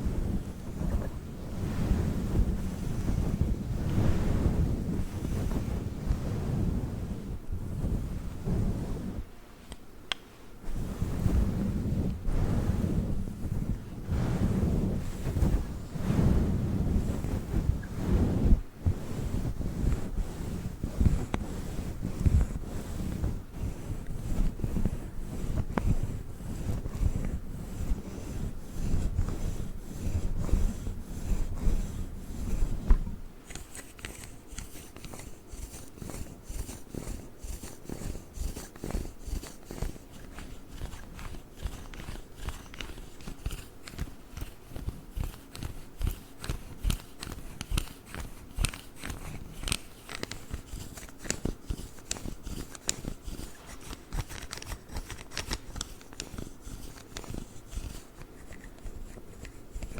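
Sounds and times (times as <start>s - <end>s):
low rubbing rumble on microphone: 0.0s - 9.4s, 10.6s - 59.9s
crackly scratching and tapping: 20.8s - 59.9s.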